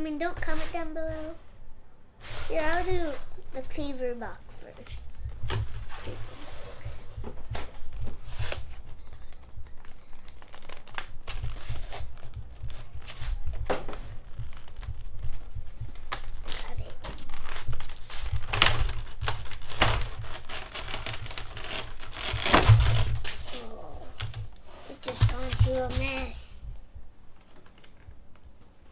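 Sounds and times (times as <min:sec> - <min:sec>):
handling clicks and bumps: 0:02.6 - 0:26.8
packaging crinkling and tearing: 0:07.4 - 0:26.4.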